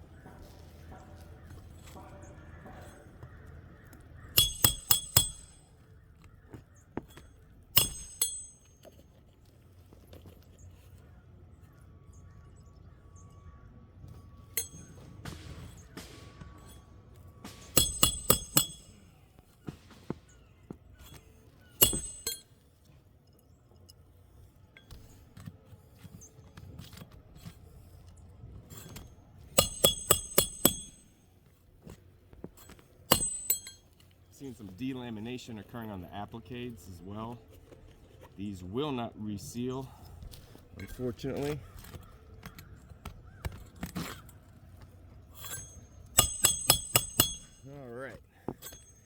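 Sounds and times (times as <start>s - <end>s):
hatchet striking roofing nails: 2.8s - 9.1s, 14.6s - 22.6s, 28.8s - 34.0s, 45.4s - 47.7s.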